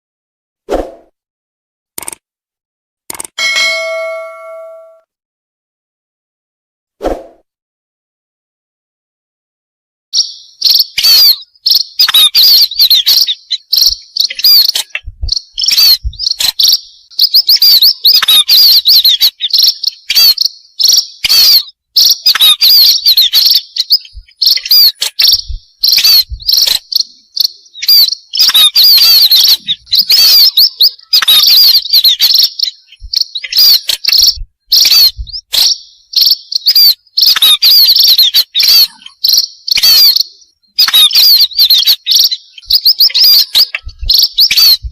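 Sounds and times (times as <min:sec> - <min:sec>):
flock of birds chirping: 0:10.2 - 0:44.9.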